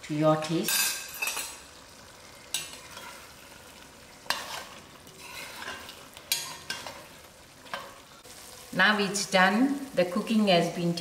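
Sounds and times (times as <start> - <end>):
curry sizzling: 0.0 - 11.0
spoon scraping against pot: 2.5 - 3.5, 4.2 - 8.0.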